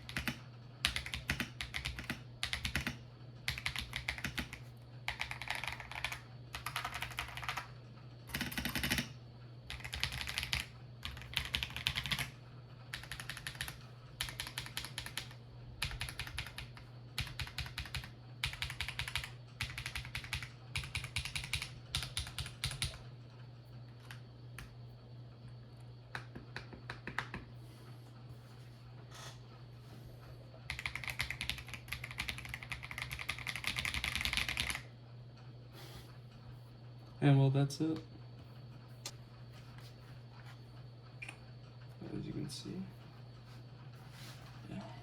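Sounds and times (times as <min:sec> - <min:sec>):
mechanical keyboard typing: 0:00.0 - 0:23.0, 0:30.7 - 0:34.9
steady low hum: 0:00.0 - 0:45.0.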